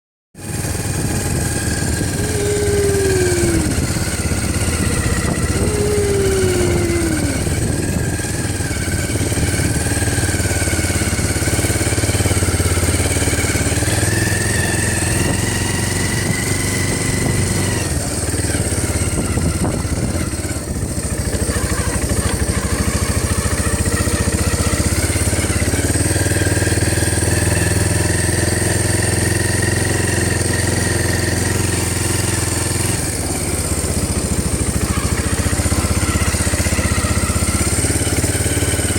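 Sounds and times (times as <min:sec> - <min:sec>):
atv engine running: 0:00.4 - 0:38.9
wavering high whine: 0:02.0 - 0:07.9.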